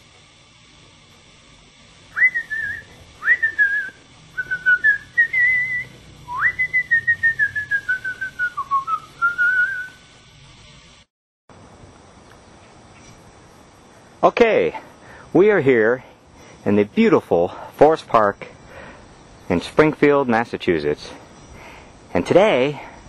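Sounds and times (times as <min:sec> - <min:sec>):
person whistling a tune: 0:02.2 - 0:10.0.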